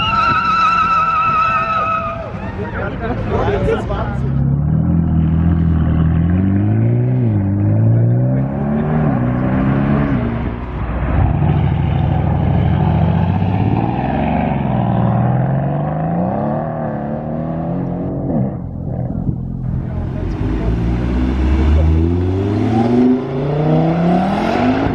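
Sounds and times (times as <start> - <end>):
sports car engine accelerating: 3.9 - 24.9.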